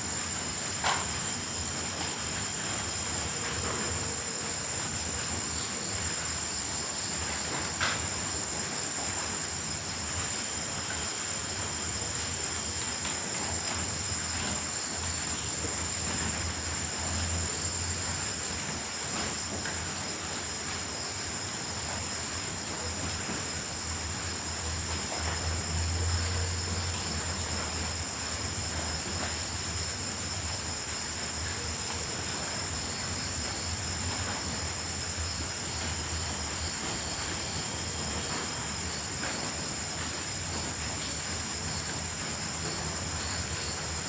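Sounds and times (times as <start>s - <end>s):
crickets trilling: 0.0s - 44.0s.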